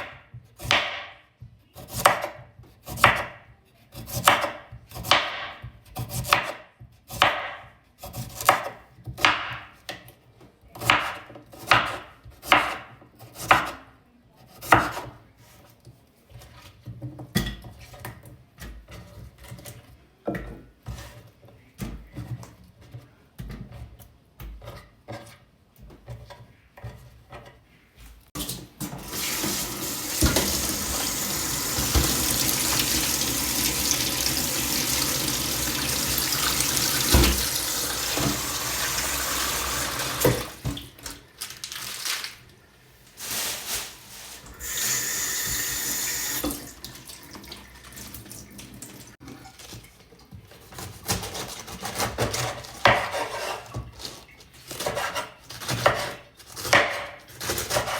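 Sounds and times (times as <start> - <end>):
tap running into sink: 28.8 - 40.9.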